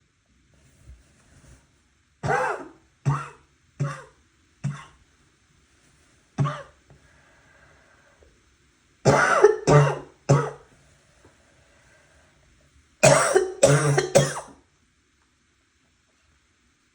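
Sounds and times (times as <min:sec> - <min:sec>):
person coughing wetly: 0:02.2 - 0:05.0, 0:06.4 - 0:06.8, 0:09.1 - 0:10.6, 0:13.0 - 0:14.6.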